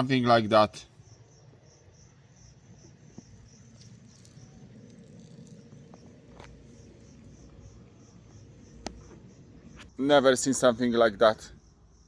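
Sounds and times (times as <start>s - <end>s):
insect chirping: 0.0s - 12.0s
low outdoor rumble: 0.0s - 12.0s
faint sharp clicks: 8.8s - 9.2s.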